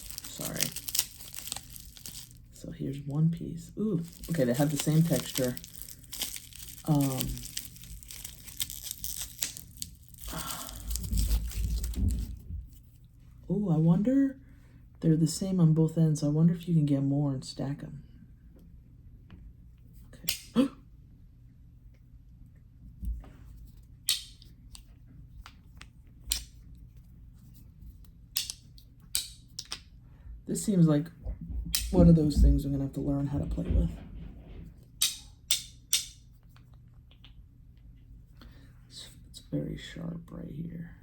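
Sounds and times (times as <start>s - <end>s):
packaging crinkling: 0.0s - 2.7s, 3.9s - 12.4s
magnetic pieces clacking together: 28.4s - 29.9s.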